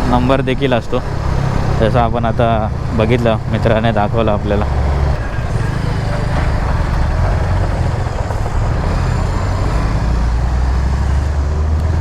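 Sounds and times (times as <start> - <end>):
motorcycle engine rumble: 0.0 - 12.0
road and wind noise: 0.0 - 12.0.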